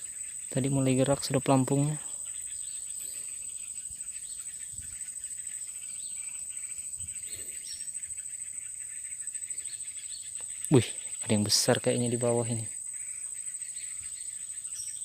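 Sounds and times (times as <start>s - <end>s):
faint bird chirps: 0.0s - 15.0s
insects trilling: 0.0s - 15.0s.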